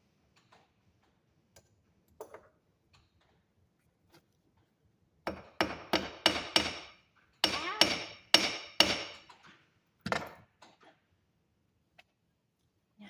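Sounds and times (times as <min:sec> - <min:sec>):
hammer striking metal: 0:05.3 - 0:09.3.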